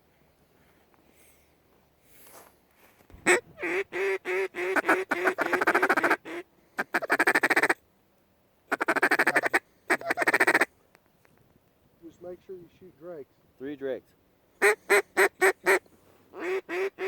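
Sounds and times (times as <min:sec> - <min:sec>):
duck call quacking: 0:03.2 - 0:07.8, 0:08.7 - 0:10.7, 0:14.6 - 0:15.8, 0:16.4 - 0:17.0.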